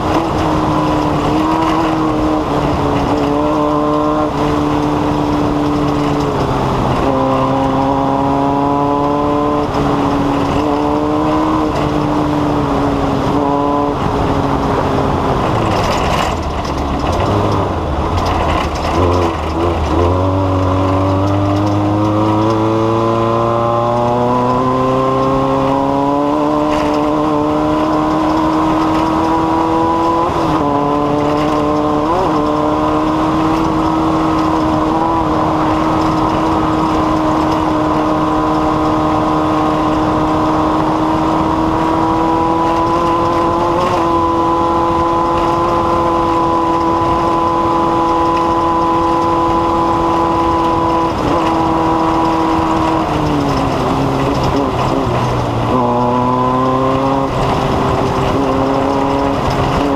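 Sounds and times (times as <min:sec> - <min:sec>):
race car engine running hard: 0:00.0 - 0:59.9.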